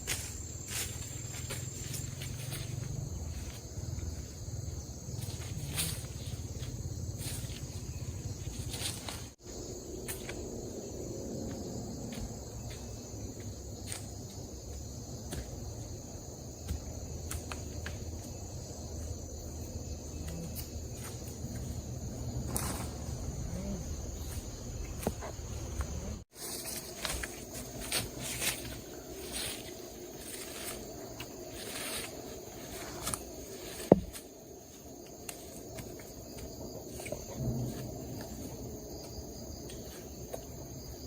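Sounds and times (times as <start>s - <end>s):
high-pitched insect drone: 0.0s - 14.7s.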